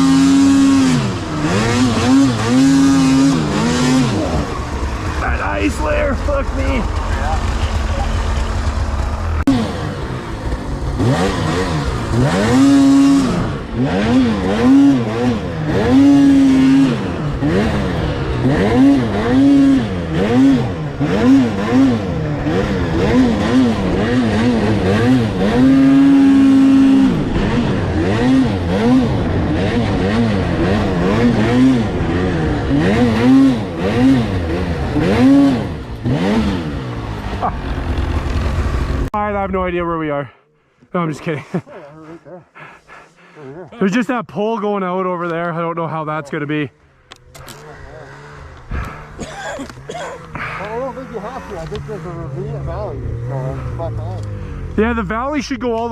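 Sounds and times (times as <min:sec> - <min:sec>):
snowmobile engine revving: 0:00.0 - 0:55.9.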